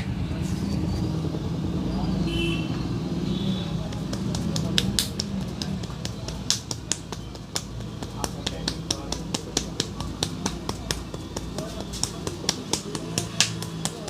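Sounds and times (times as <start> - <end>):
hands clapping and slapping: 3.7 - 14.0.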